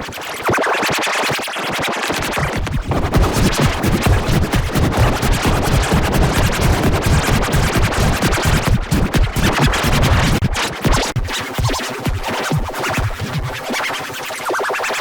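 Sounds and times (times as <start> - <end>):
scratch-like stuttering clicks: 1.9 - 13.8
distorted electronic music: 2.3 - 15.0.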